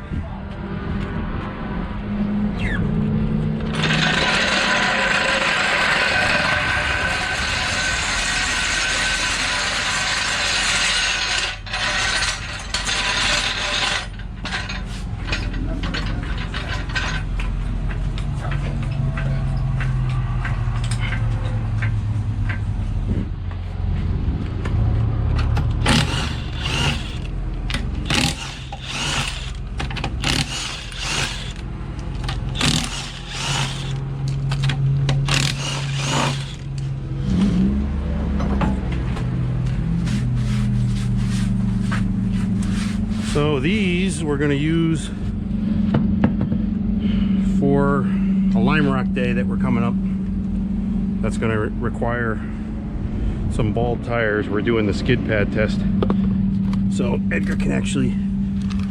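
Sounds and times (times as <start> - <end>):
steady low drone: 0.0 - 58.9
tools ratcheting and clicking: 25.4 - 36.9.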